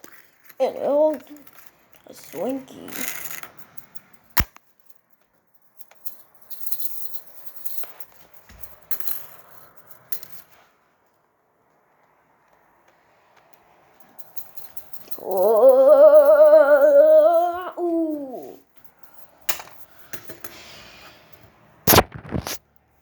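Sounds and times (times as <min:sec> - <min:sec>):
person saying ooh: 0:15.2 - 0:18.6
candy wrappers crinkling: 0:21.9 - 0:22.6.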